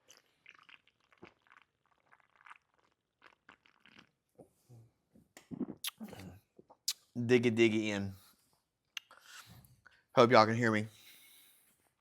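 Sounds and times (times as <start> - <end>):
man swallowing and gulping: 0.0 - 4.6, 5.3 - 7.0.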